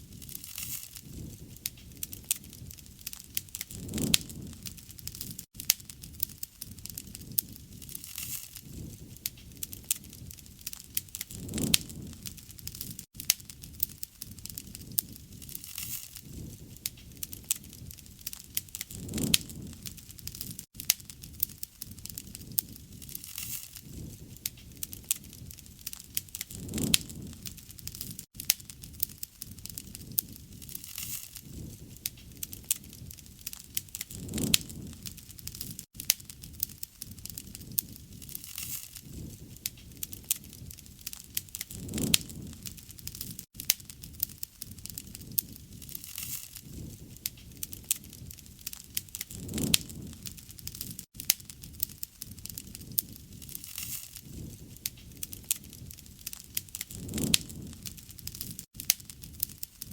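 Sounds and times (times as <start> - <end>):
campfire crackling and popping: 0.0 - 59.9
low fire rush: 1.0 - 5.4, 6.9 - 13.0, 16.2 - 20.6, 23.8 - 28.2, 31.4 - 35.8, 39.0 - 43.4, 45.2 - 51.0, 54.2 - 58.6.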